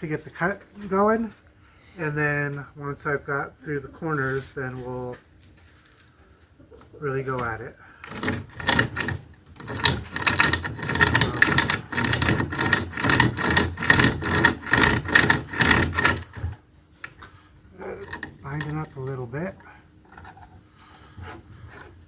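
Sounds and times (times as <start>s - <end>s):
hand chainsaw rasping through wood: 8.1s - 16.6s.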